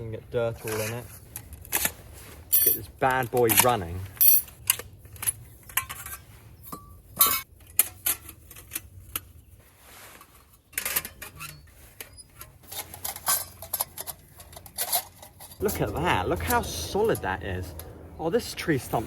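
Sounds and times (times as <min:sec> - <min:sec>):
metal stove parts clinking: 0:02.5 - 0:09.3, 0:10.6 - 0:17.9.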